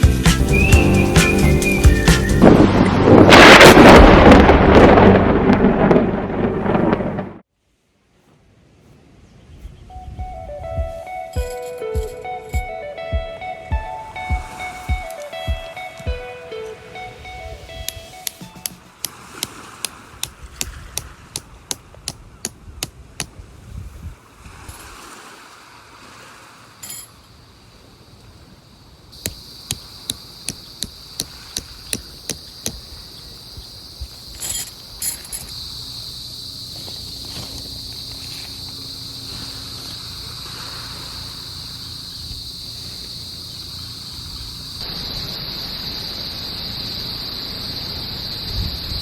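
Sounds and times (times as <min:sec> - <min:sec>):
low rushing background: 0:00.0 - 0:07.4, 0:08.3 - 0:18.2
steady high-pitched buzz: 0:10.2 - 0:18.1
sharp evenly spaced knocks: 0:10.8 - 0:16.2, 0:18.2 - 0:23.4, 0:29.2 - 0:33.1.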